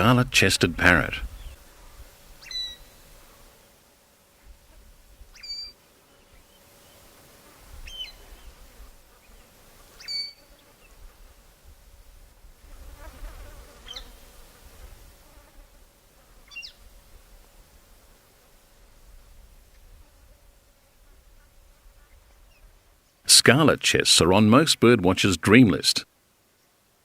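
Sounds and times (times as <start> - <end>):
bird chirps: 5.3 - 7.0, 7.8 - 8.5, 10.0 - 10.5.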